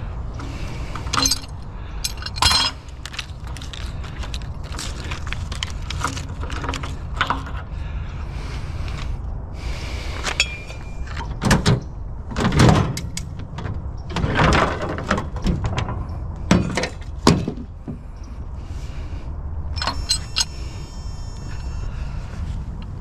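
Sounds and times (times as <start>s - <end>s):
small metallic clicks: 19.8s - 21.8s.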